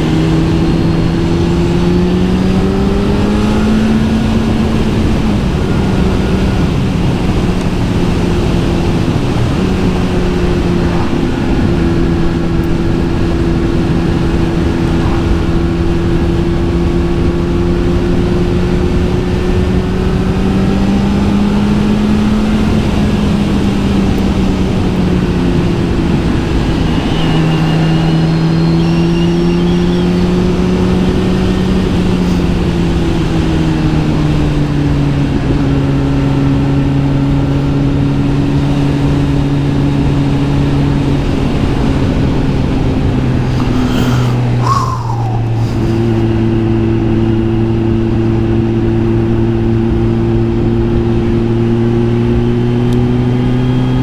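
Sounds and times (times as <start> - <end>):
wind noise: 0.0 - 20.3, 41.3 - 46.7
motorcycle engine cruising: 0.0 - 54.0.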